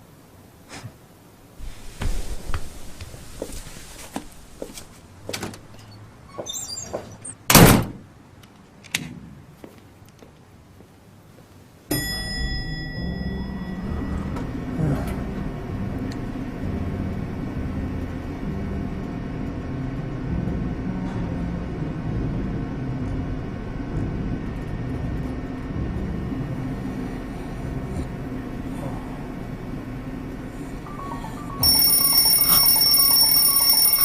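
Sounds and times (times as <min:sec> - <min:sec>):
low sustained music: 0:12.4 - 0:23.4.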